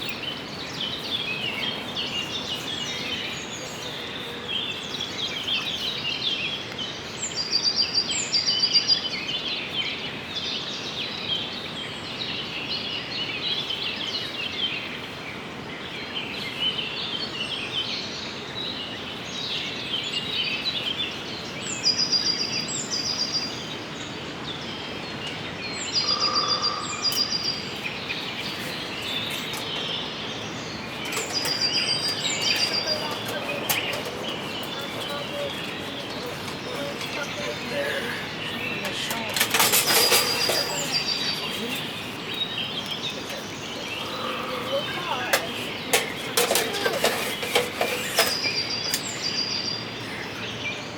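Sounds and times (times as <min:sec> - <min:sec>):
birds calling and chattering: 0:00.0 - 0:50.9
outdoor hiss: 0:25.0 - 0:50.2.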